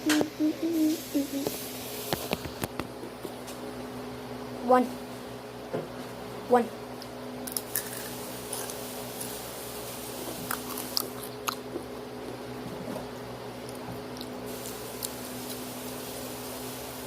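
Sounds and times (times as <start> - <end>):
chewing crunchy chips: 7.5 - 9.4, 10.2 - 16.0.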